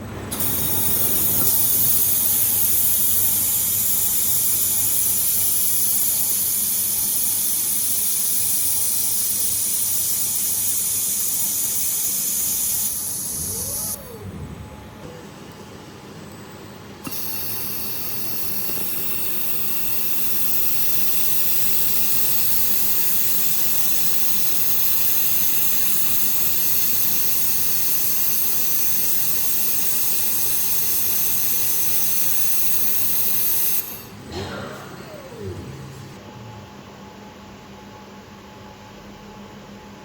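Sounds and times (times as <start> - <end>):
laser welder hissing: 0.3 - 15.0, 17.0 - 36.2
rising and falling whine: 13.1 - 15.4, 34.1 - 36.9.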